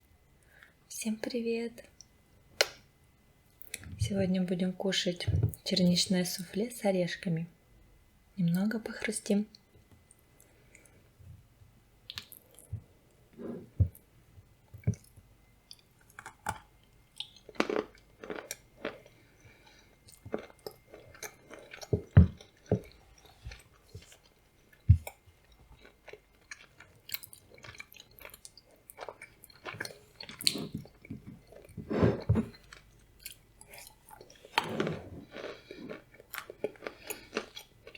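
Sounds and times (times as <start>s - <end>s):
nuts crunching while chewing: 15.7s - 37.9s.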